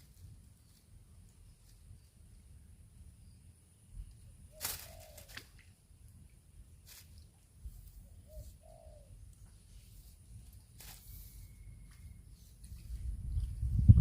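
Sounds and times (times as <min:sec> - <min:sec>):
dove cooing: 0:04.5 - 0:05.4, 0:08.3 - 0:09.2.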